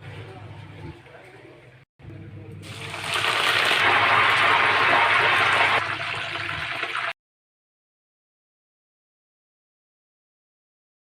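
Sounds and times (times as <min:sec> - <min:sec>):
food sizzling in hot oil: 0:02.7 - 0:07.2.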